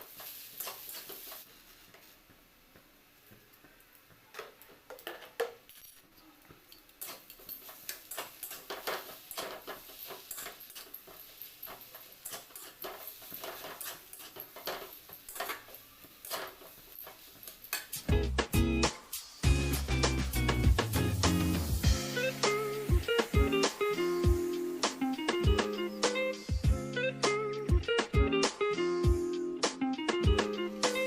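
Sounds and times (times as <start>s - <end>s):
utensils tapping on cookware: 6.6s - 18.1s
guitar music: 18.1s - 31.0s.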